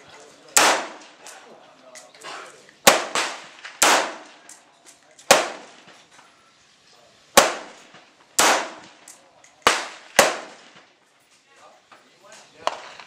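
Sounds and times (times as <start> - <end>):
gunshots with echo: 0.6 - 1.2, 2.8 - 4.4, 5.3 - 5.8, 7.4 - 9.0, 9.6 - 10.9.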